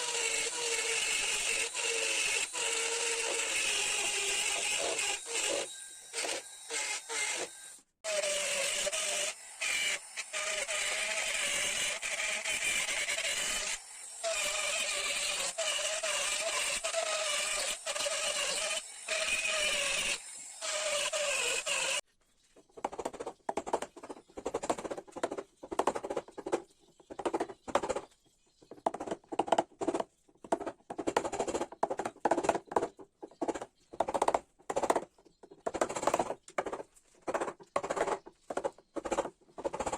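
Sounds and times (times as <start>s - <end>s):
hand tool scraping wood: 0.0s - 22.0s
power carving tool cutting wood: 0.0s - 22.0s.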